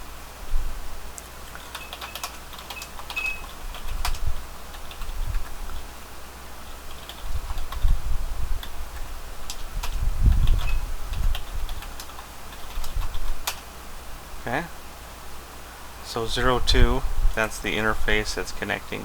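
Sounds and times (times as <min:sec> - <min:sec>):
keyboard keystroke clicks: 0:01.2 - 0:04.2.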